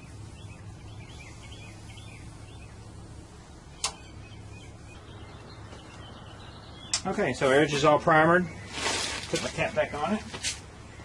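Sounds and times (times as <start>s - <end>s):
low background hum: 0.0s - 11.0s
small birds chirping: 0.0s - 11.0s
sharp click: 3.8s - 4.0s.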